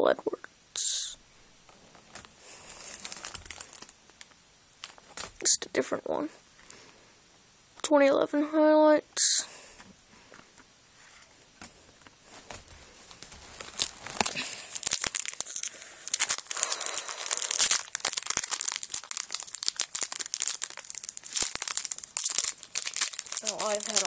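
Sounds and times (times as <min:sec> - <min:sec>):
wrapper tearing and crinkling: 0:01.6 - 0:05.5, 0:12.4 - 0:24.0.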